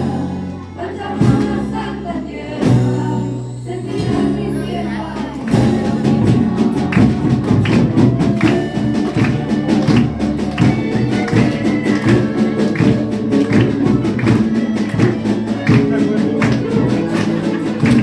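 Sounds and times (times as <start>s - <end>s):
orchestra playing: 0.0s - 18.0s
steady percussive beat: 5.2s - 18.0s.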